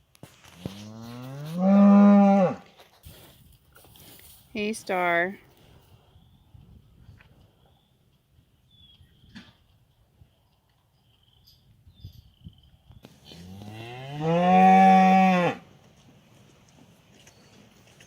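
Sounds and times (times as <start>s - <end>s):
cow mooing: 1.0s - 2.6s, 13.4s - 15.6s.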